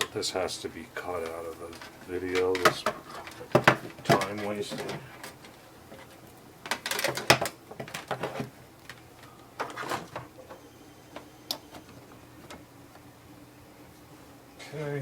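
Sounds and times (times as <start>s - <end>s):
handling clicks and rustles: 0.8s - 13.1s.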